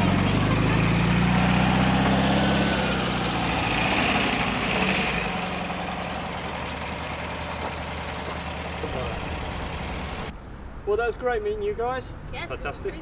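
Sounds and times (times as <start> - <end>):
car engine running at low revs: 8.7 - 10.3.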